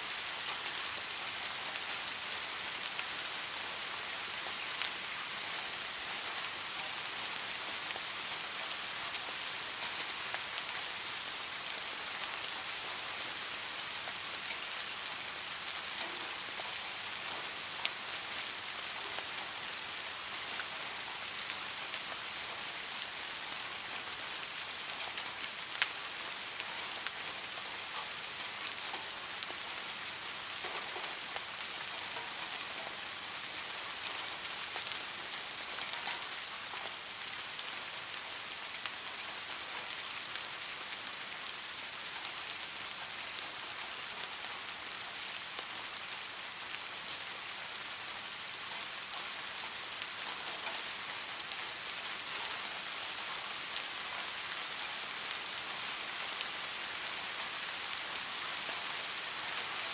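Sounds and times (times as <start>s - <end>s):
steady rain hiss: 0.0s - 59.9s
raindrops ticking on a surface: 0.1s - 59.9s.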